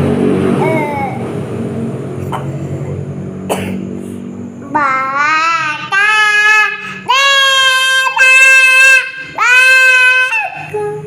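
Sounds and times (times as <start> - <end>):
child singing high notes: 4.6 - 11.0.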